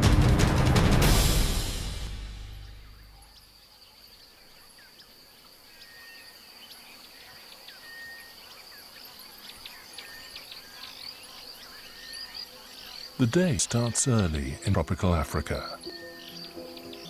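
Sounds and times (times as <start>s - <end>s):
soundtrack music: 0.0s - 3.2s
insects trilling: 2.8s - 17.0s
whistled bird calls: 5.7s - 17.0s.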